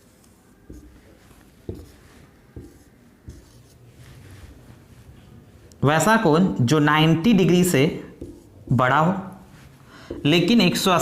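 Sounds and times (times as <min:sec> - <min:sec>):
faint writing strokes: 0:00.0 - 0:05.8, 0:08.0 - 0:10.9
soft taps: 0:01.6 - 0:02.0.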